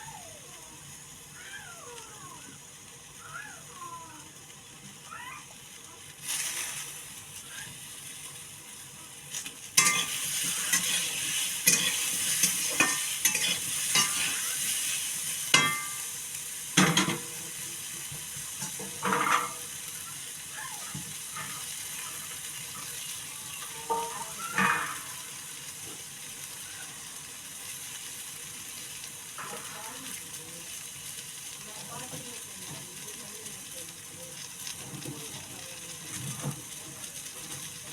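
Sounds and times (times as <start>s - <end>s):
curry sizzling in a pan: 0.0s - 37.9s
spoon scraping a pan: 9.4s - 16.2s, 16.8s - 19.8s, 20.9s - 26.0s.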